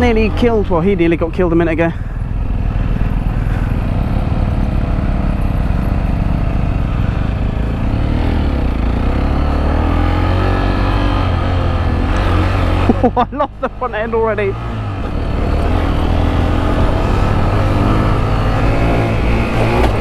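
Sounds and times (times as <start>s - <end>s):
motorcycle engine running: 0.0s - 20.0s
wind and road noise: 0.0s - 20.0s.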